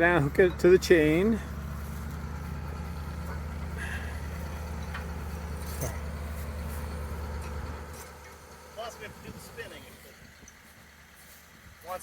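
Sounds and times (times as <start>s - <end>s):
engine idling with low hum: 0.0s - 12.0s.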